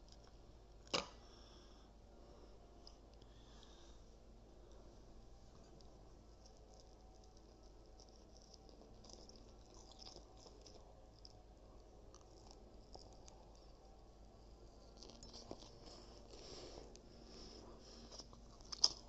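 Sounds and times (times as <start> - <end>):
low steady hum: 0.0 - 19.0
chewing and crunching: 4.6 - 19.0.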